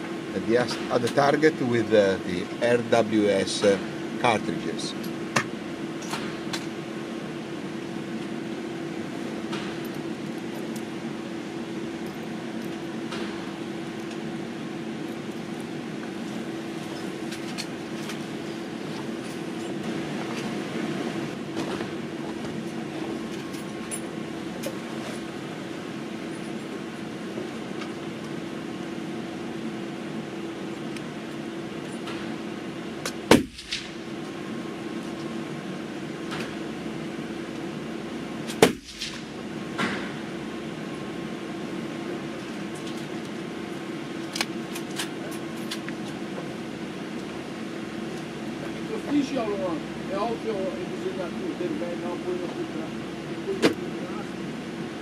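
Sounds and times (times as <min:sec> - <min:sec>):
steady low hum: 0:00.0 - 0:55.0
rifle shot: 0:33.3 - 0:34.0, 0:38.5 - 0:39.3.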